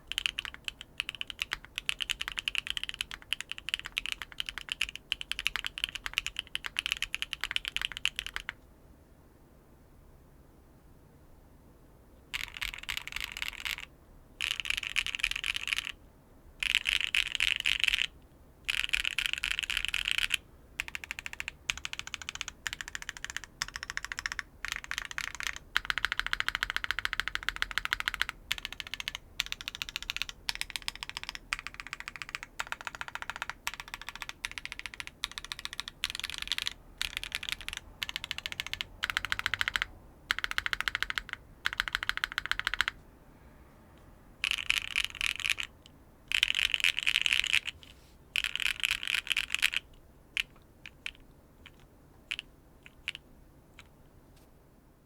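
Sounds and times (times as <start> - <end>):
mechanical keyboard typing: 0.0 - 8.6, 12.3 - 16.0, 16.6 - 43.0, 44.4 - 47.8, 48.4 - 53.2.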